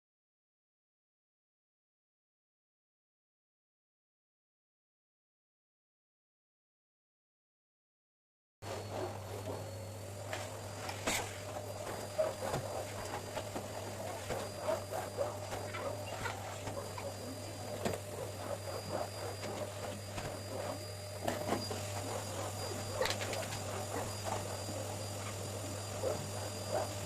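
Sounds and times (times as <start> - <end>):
low electrical hum: 8.6 - 27.0.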